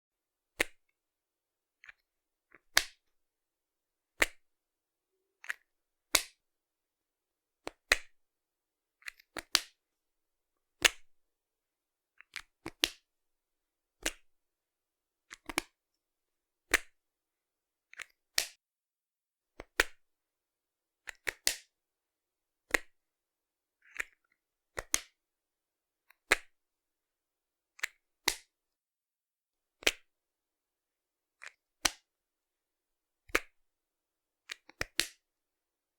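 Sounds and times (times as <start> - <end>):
marker cap clicking: 0.6 - 0.8, 2.6 - 3.1, 4.2 - 4.4, 5.4 - 6.4, 9.0 - 9.8, 10.8 - 11.1, 12.2 - 13.0, 14.0 - 14.3, 15.3 - 15.8, 29.8 - 30.0, 33.3 - 33.5, 34.5 - 35.2.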